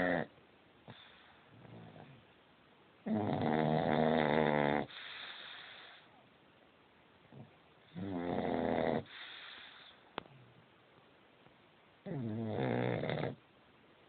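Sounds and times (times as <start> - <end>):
dog snoring loudly: 0.0 - 0.3, 3.0 - 6.0, 7.3 - 9.9, 12.1 - 13.4
dog breathing softly: 9.0 - 10.1.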